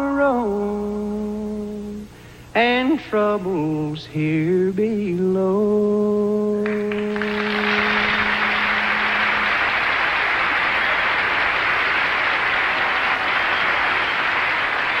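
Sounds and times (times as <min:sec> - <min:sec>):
audience applauding: 0:06.6 - 0:15.0.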